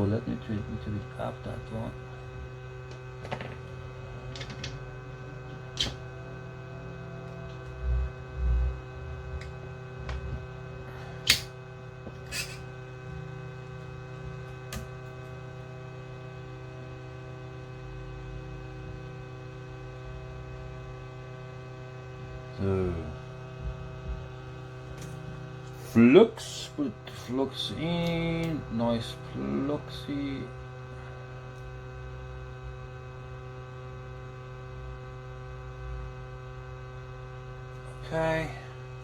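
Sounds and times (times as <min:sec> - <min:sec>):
electrical hum: 0:00.0 - 0:39.0
soft low thumps: 0:23.6 - 0:24.4.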